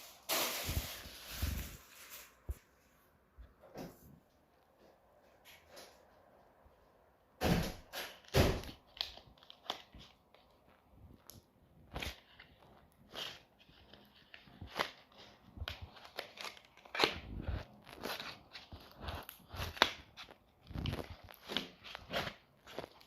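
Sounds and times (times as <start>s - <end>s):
crinkling rustles: 0.0s - 2.8s, 8.1s - 23.0s.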